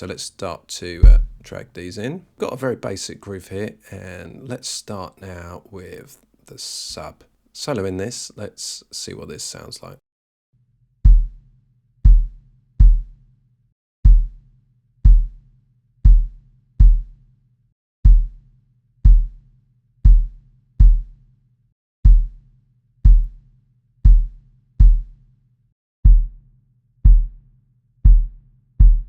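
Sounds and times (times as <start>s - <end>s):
deep booming kick drum hits: 1.0s - 1.5s, 24.1s - 25.0s, 26.1s - 26.4s, 27.1s - 27.3s, 28.1s - 29.0s.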